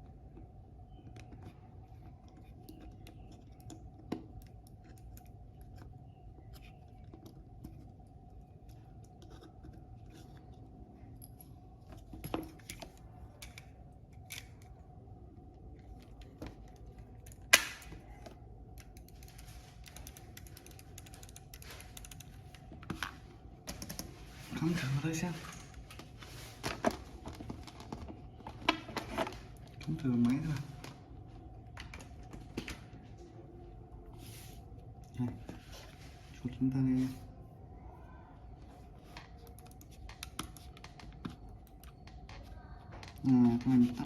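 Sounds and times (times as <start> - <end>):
faint steady hum: 0.0 - 44.0
computer mouse clicks: 16.6 - 22.6, 39.2 - 43.2.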